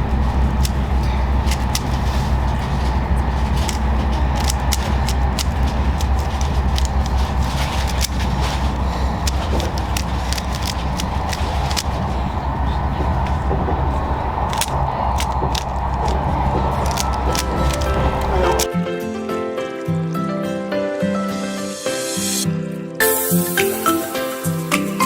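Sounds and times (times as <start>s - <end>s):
steady low rumble: 0.0s - 18.7s
plastic cube clicks and snaps: 1.4s - 12.9s, 14.5s - 18.7s.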